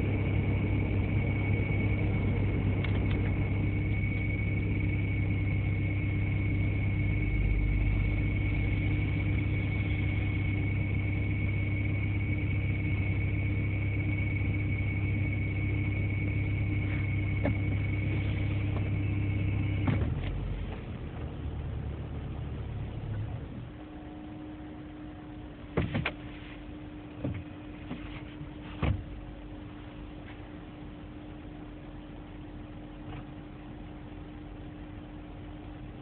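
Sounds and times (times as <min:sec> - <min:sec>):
high-pitched whistling whine: 0:00.0 - 0:20.7, 0:23.7 - 0:25.5
low hum: 0:00.0 - 0:36.0.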